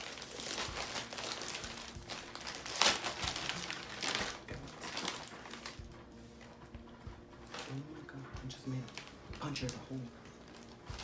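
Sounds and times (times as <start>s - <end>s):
packing paper crumpling: 0.0s - 5.9s, 8.8s - 11.0s.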